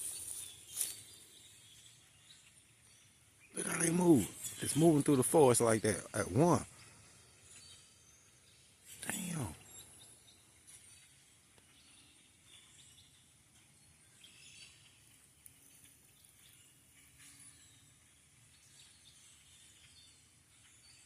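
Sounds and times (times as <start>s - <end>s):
steady hiss: 0.0s - 1.2s
flock of birds chirping: 0.0s - 21.0s.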